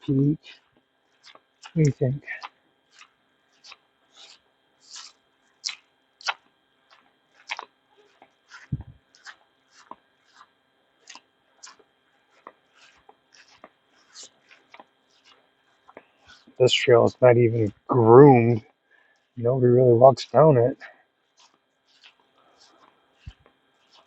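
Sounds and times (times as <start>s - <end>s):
footsteps crunching on trail: 12.4s - 16.6s.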